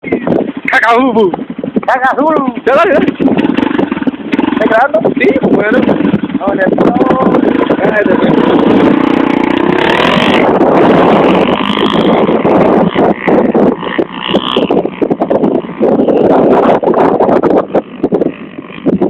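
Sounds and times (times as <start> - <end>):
motorcycle engine revving: 0.2 - 19.0.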